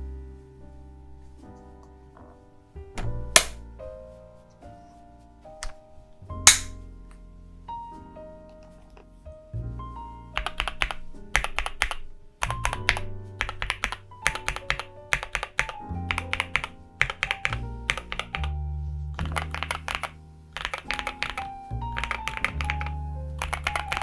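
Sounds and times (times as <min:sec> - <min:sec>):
background music with steady beat: 0:00.0 - 0:08.5, 0:09.1 - 0:24.0
mechanical keyboard keys clicking: 0:03.0 - 0:03.6, 0:06.5 - 0:06.8, 0:10.4 - 0:18.6, 0:19.2 - 0:24.0.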